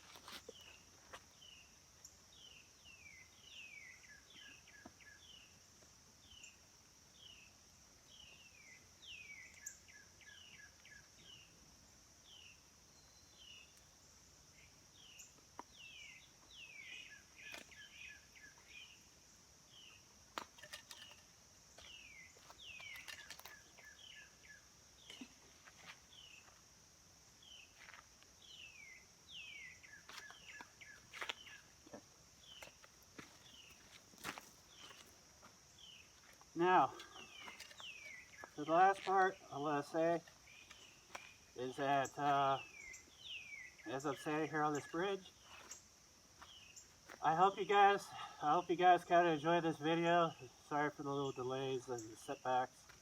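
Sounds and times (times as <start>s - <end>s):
birds chirping: 14.5s - 26.6s, 27.3s - 53.0s.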